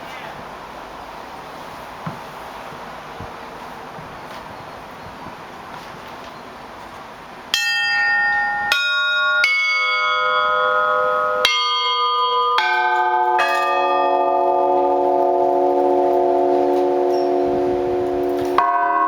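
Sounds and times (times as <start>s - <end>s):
church bells pealing: 7.4s - 19.0s
deeper bells ringing: 7.5s - 19.0s.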